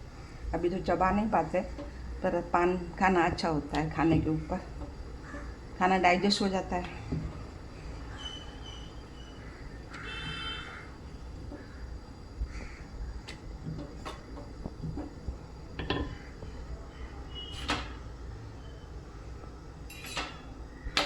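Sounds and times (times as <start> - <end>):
steady low hum: 0.0 - 21.0
cookware knocking and clinking: 15.7 - 16.4, 19.9 - 21.0.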